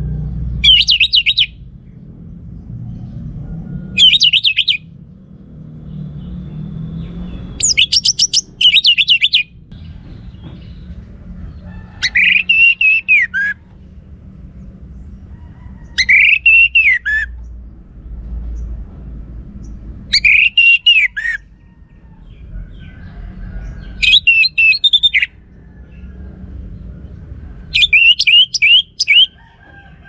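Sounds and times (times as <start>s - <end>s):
low background rumble: 0.0s - 30.0s
thrush singing whistled phrases: 0.6s - 1.6s, 4.0s - 4.9s, 7.6s - 9.5s, 12.0s - 13.6s, 16.0s - 17.3s, 20.1s - 21.4s, 24.0s - 25.4s, 27.7s - 29.4s.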